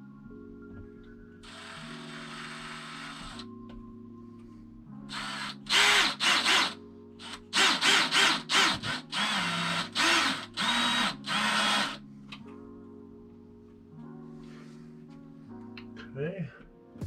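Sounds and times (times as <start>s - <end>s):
background music: 0.0s - 17.0s
power drill driving screws: 1.4s - 3.4s, 5.1s - 12.0s.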